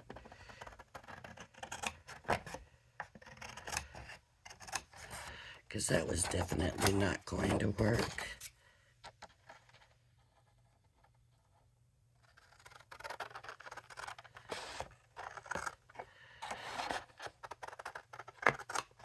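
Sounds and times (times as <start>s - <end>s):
paper rustling and scraping: 4.9s - 8.6s, 12.2s - 19.0s.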